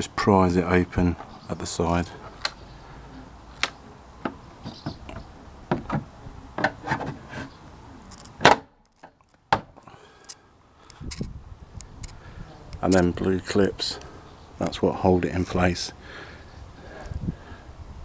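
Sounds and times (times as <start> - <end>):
plastic panel clicks and knocks: 3.6 - 7.5.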